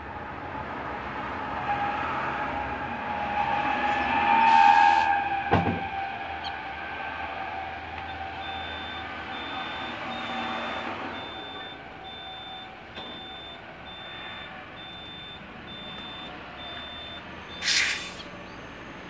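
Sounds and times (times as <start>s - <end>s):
reversing alarm beeping: 7.9s - 18.8s.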